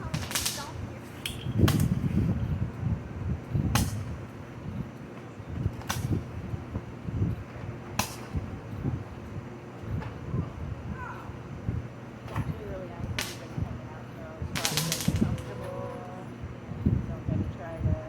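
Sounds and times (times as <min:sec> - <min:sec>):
fireworks cracking: 0:00.0 - 0:02.1, 0:13.1 - 0:13.7, 0:14.4 - 0:16.1
low thuds and rumbling: 0:01.4 - 0:04.9.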